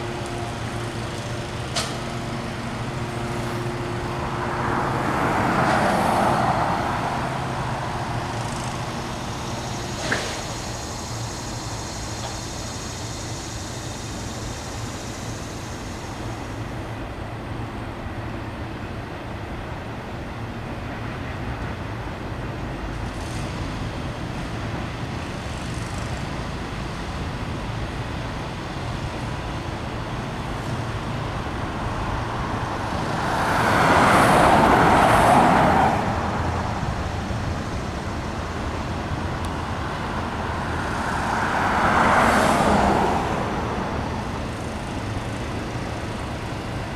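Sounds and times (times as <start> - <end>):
vehicle passing close: 0.0 - 12.0, 25.6 - 46.9
road traffic noise: 0.0 - 46.9.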